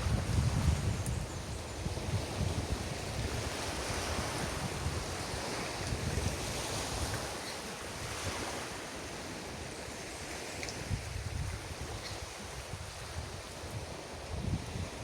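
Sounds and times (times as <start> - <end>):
surf washing on a beach: 0.0 - 15.0
wind buffeting the microphone: 0.0 - 15.0.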